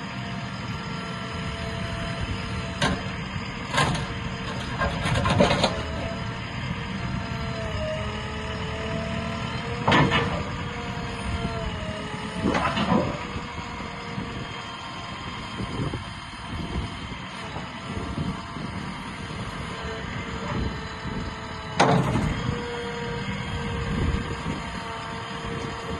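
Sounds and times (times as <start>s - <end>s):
backhoe loader engine humming: 0.0s - 25.9s
wavering whine: 5.6s - 25.9s.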